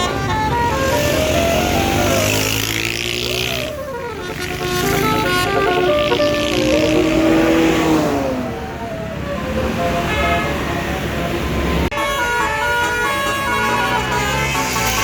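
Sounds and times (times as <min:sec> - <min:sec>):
bus horn playing a tune: 0:00.0 - 0:07.8, 0:09.9 - 0:10.7, 0:11.9 - 0:15.0.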